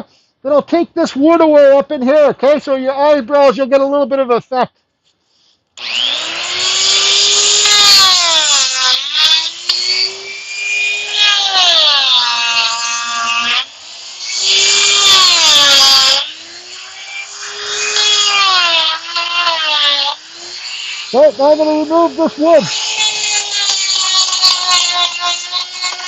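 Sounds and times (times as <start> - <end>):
die grinder cutting wood: 5.8 - 26.0.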